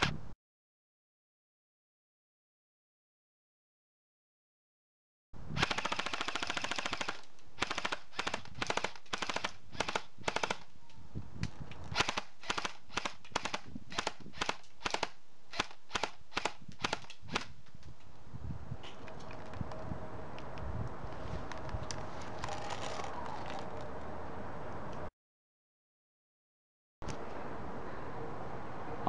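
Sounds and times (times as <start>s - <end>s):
airsoft rifle firing: 5.6s - 10.7s, 12.0s - 17.5s.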